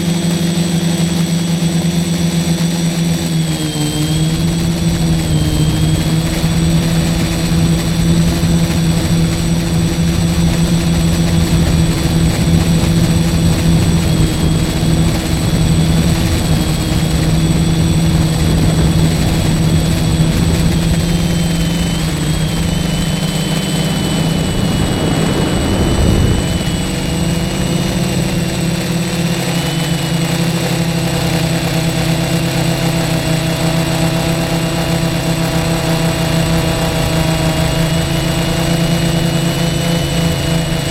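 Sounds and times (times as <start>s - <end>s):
quadcopter motors droning: 0.0s - 40.9s
brief rushing noise: 21.5s - 29.2s.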